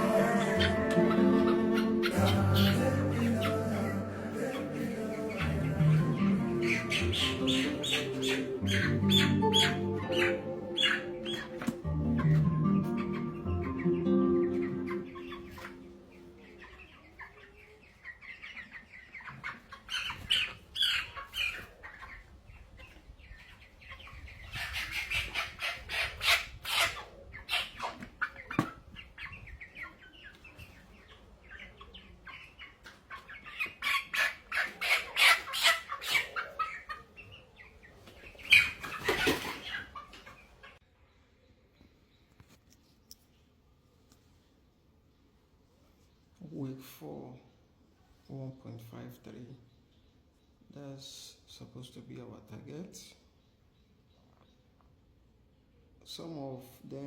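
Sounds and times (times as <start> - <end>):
chickens clucking and squawking: 0.0 - 42.3
wings flapping: 38.6 - 39.9.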